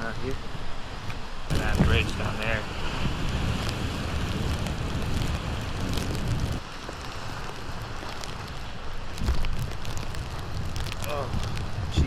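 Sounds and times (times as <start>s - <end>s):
ocean surf on rocks: 0.0s - 12.0s
wind buffeting microphone: 0.0s - 12.0s.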